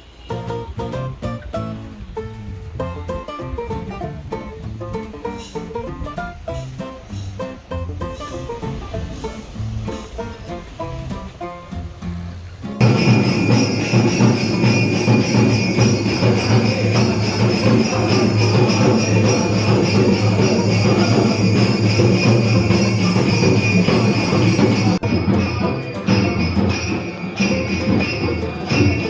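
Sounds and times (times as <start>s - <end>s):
music with jingling bells: 12.8s - 29.0s.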